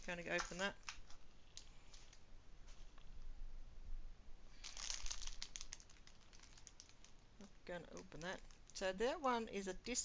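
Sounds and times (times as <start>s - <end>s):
plastic packaging crinkling: 0.0s - 2.2s, 4.5s - 9.3s.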